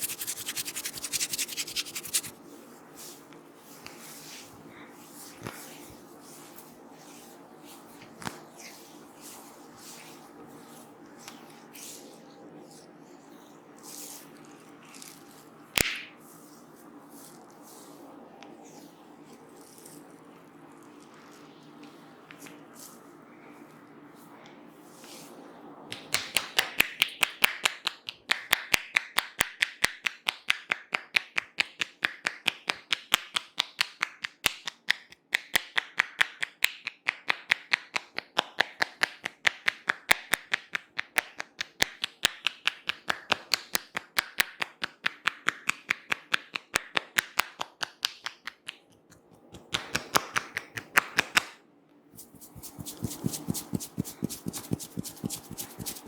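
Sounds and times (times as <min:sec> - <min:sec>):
hands slapping on a head: 0:00.0 - 0:02.3, 0:25.9 - 0:51.6, 0:52.2 - 0:56.0.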